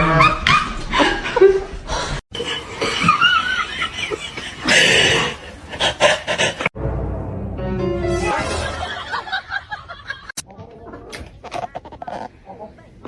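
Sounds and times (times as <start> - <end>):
people laughing and snickering: 2.4 - 6.7, 8.3 - 10.4.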